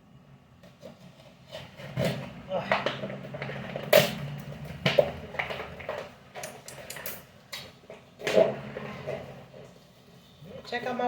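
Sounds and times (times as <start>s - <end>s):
small items clicking and clinking: 2.7s - 8.5s.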